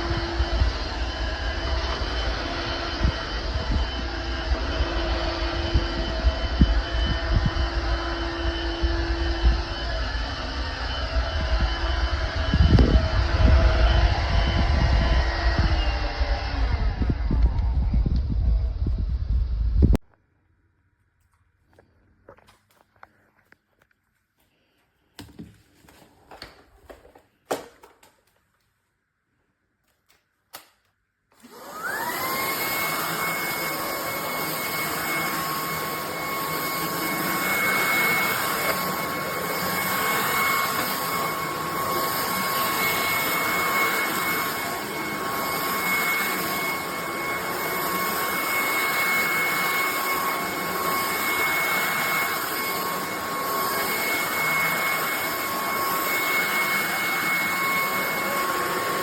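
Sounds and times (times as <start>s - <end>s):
vacuum cleaner motor whine: 0.0s - 19.5s, 31.3s - 59.0s.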